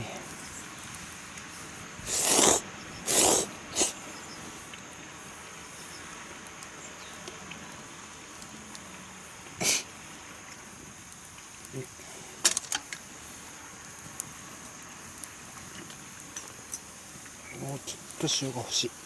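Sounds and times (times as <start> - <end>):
person slurping pasta: 2.0 - 4.0.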